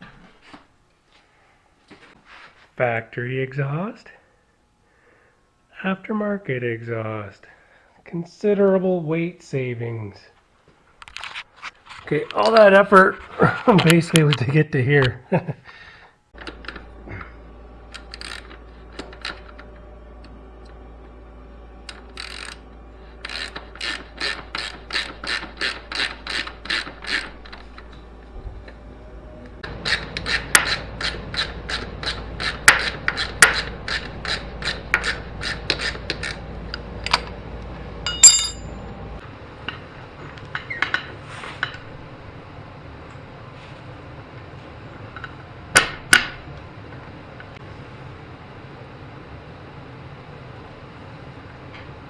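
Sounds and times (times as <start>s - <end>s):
ratchet wrench clicking: 21.9s - 22.6s, 23.2s - 27.6s
ringing metallic clink: 38.1s - 38.8s.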